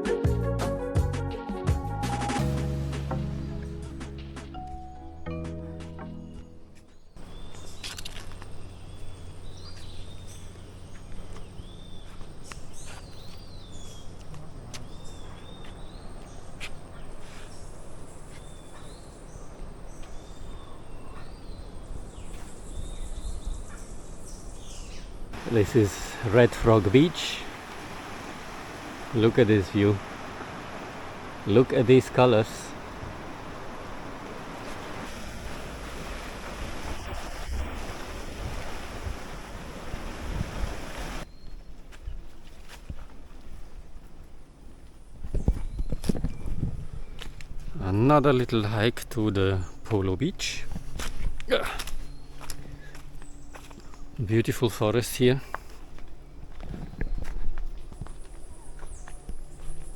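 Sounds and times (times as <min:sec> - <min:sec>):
background hiss: 0:21.0 - 0:41.3
surf washing onto beach: 0:25.4 - 0:41.2
wind buffeting microphone: 0:32.8 - 0:41.2, 0:45.2 - 0:47.8.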